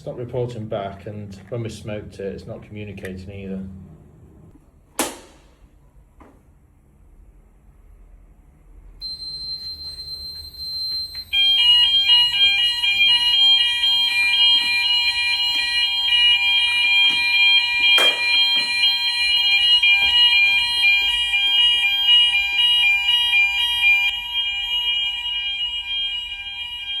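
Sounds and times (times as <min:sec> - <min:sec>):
alarm of alternating high tones: 0:09.0 - 0:27.0
single high alarm tone: 0:09.0 - 0:27.0.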